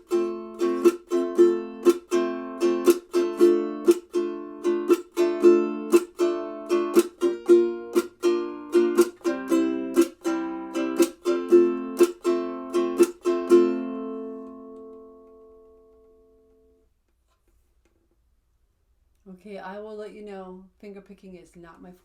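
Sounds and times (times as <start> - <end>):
ukulele strummed in chords: 0.0 - 16.8.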